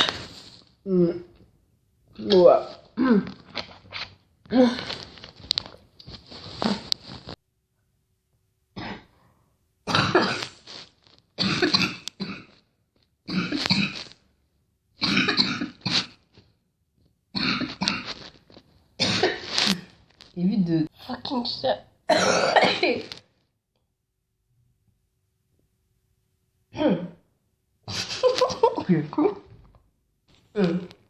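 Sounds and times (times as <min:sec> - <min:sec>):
girl coughing: 0:08.8 - 0:09.1, 0:09.9 - 0:10.6, 0:11.4 - 0:12.5, 0:15.0 - 0:15.8, 0:19.0 - 0:19.9, 0:22.1 - 0:23.1.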